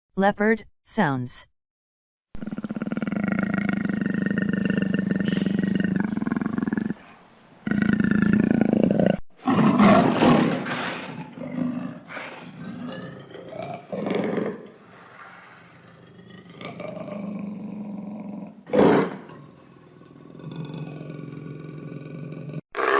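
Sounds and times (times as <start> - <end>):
leopard growling roars: 2.4 - 22.9.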